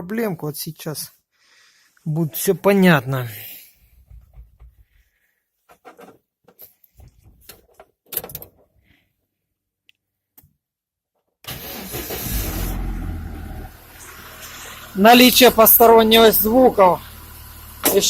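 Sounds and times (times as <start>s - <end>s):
car engine starting and running: 11.5s - 18.0s.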